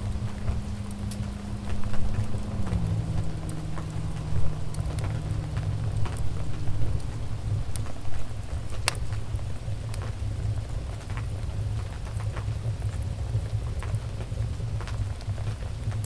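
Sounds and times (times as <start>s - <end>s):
soft low sustained note: 0.0s - 10.0s
wood fire crackling: 0.0s - 16.0s.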